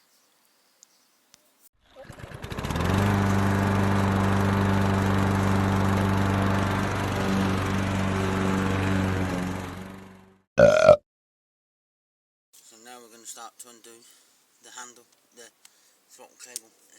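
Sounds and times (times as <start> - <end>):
brush cutter engine running: 2.0 - 10.3.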